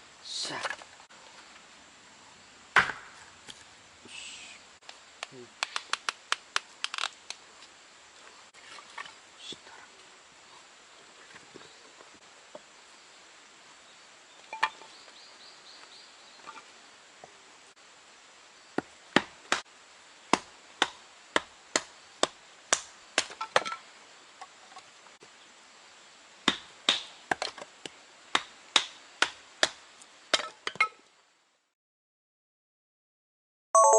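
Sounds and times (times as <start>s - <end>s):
axe chopping firewood: 2.7s - 3.2s, 18.8s - 19.6s, 20.3s - 23.8s, 26.4s - 27.7s, 28.3s - 31.0s.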